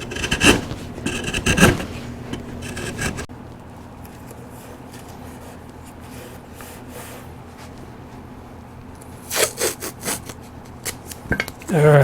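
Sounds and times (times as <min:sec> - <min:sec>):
rustles and scrapes on wood: 0:00.0 - 0:03.3, 0:04.2 - 0:08.2
steady low hum: 0:00.0 - 0:12.0.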